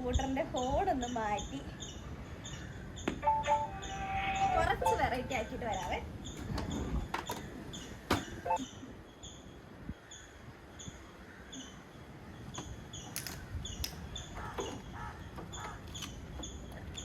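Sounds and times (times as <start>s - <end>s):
small bird chirping: 0.1s - 3.2s.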